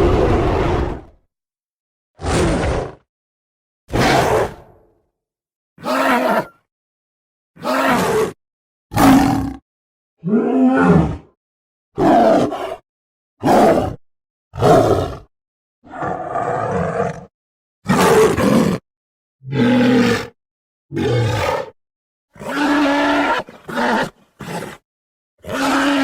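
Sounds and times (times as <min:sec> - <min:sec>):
gorilla roars and grunts: 0:00.0 - 0:01.2, 0:05.8 - 0:06.6, 0:07.6 - 0:09.6, 0:10.2 - 0:11.4, 0:12.0 - 0:12.8, 0:14.6 - 0:17.3, 0:17.9 - 0:18.8, 0:19.4 - 0:21.8, 0:22.4 - 0:24.8, 0:25.4 - 0:26.0.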